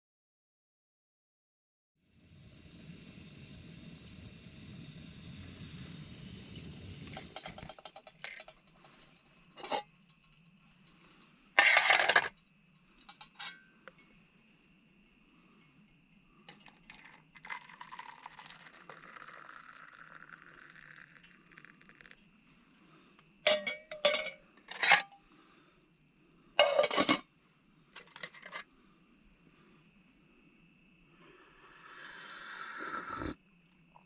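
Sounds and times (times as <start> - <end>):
faint hiss: 2.0 - 34.0
cookware knocking and clinking: 7.1 - 8.6, 23.5 - 25.1, 26.6 - 27.2.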